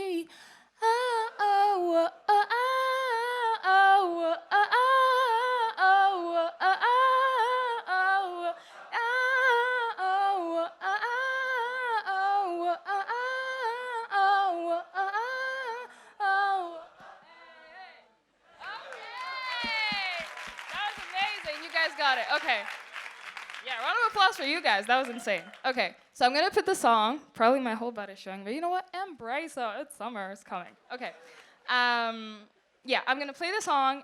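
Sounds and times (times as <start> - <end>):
woman singing wordless vocals: 0.0 - 17.0.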